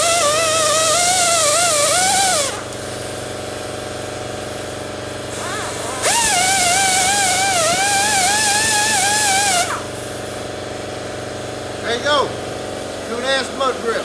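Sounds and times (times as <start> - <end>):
power tool whining cutting rubber: 0.0 - 2.8, 5.2 - 10.0.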